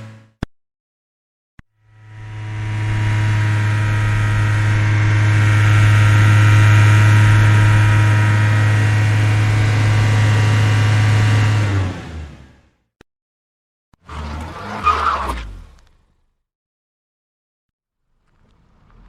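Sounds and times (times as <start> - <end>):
car engine running: 2.1 - 12.7.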